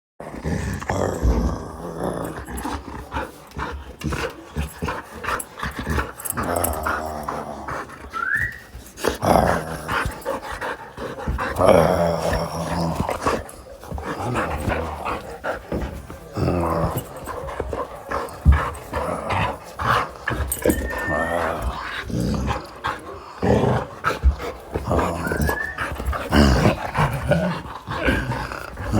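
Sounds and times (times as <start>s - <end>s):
dog growling in play: 0.2s - 28.9s
dog whining: 6.1s - 10.4s, 11.4s - 23.8s, 24.4s - 28.9s.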